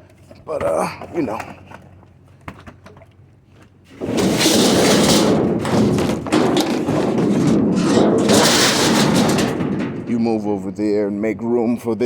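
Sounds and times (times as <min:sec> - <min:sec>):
heavy object scraping across metal: 0:03.9 - 0:10.5.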